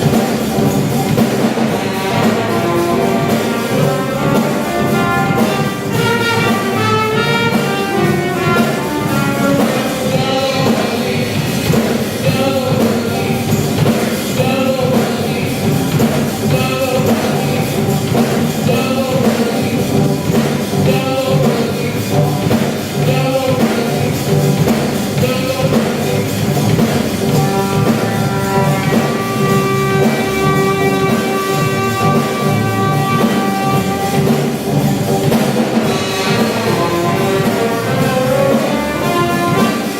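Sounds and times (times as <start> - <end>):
live funk band playing: 0.0 - 39.9
long held horn notes: 1.7 - 10.1, 27.4 - 34.4.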